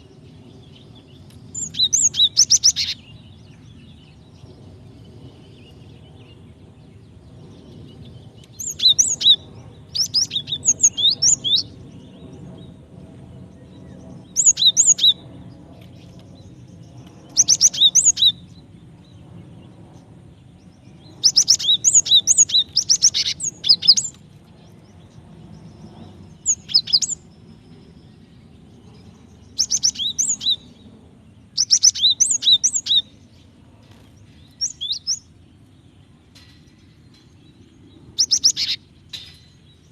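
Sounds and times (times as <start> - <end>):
low steady hum: 0.0 - 39.9
bird chirping rapidly: 0.8 - 3.7, 7.9 - 11.8, 14.3 - 15.2, 16.4 - 18.5, 20.7 - 24.2, 24.9 - 28.0, 28.8 - 30.8, 31.5 - 33.6, 34.2 - 35.4, 37.0 - 39.9.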